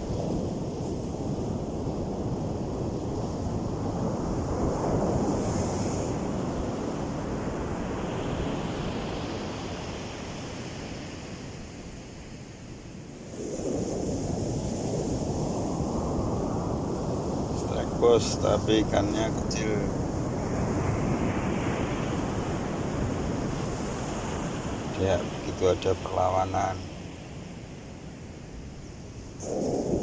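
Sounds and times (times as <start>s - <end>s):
wind buffeting microphone: 13.2s - 25.6s
surf breaking on beach: 13.2s - 27.5s, 28.4s - 30.0s.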